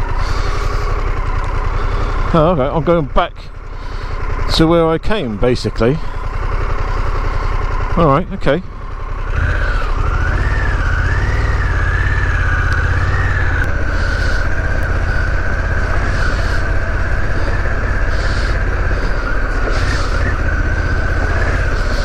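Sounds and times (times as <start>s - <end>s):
motorcycle engine running: 0.0s - 22.0s
road rumble: 0.0s - 22.0s
high wavering whine: 8.8s - 22.0s.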